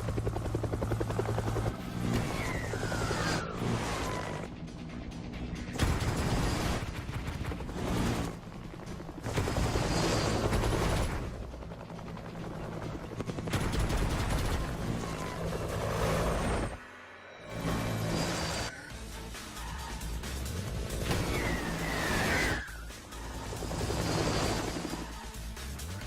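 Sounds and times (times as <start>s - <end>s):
action soundtrack music: 0.0s - 26.0s
rapid gunfire: 5.6s - 11.6s, 13.2s - 15.0s.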